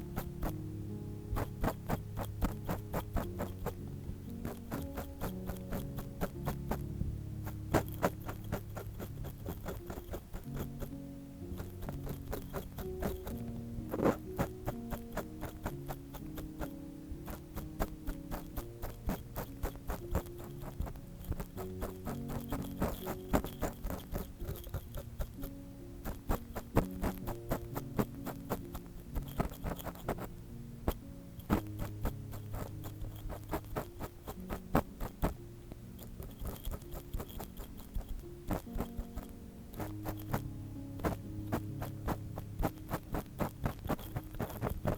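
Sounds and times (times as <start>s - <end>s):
ear pick scratching and clicking: 0.0s - 0.6s, 1.3s - 35.4s, 36.0s - 44.9s
soft background music: 0.0s - 44.9s
low steady drone: 6.3s - 7.8s.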